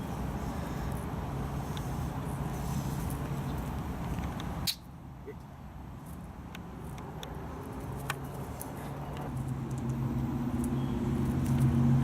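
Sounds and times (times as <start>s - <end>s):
vehicle engine hum: 0.0s - 12.0s.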